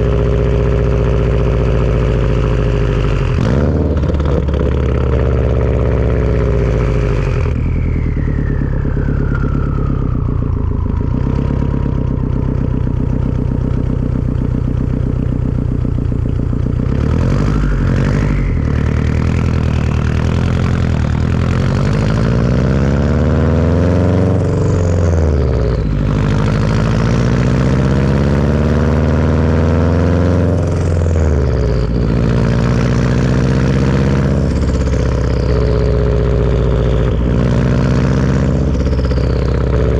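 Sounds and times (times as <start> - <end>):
turbocharged car engine revving: 0.0 - 39.9
turbo whistle: 5.7 - 13.3, 17.1 - 22.7, 30.5 - 39.9.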